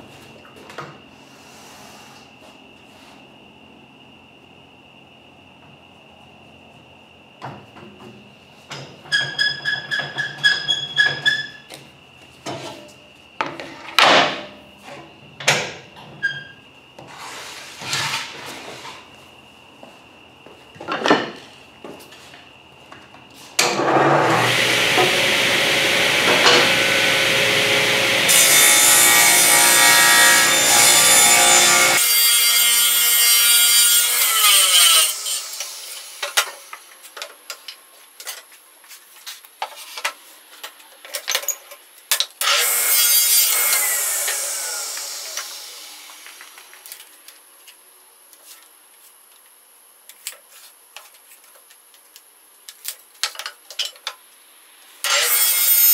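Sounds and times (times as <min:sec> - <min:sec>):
power saw cutting wood: 0:23.6 - 0:36.3, 0:42.4 - 0:46.7, 0:55.0 - 0:55.9
saw winding down whine: 0:23.9 - 0:32.0.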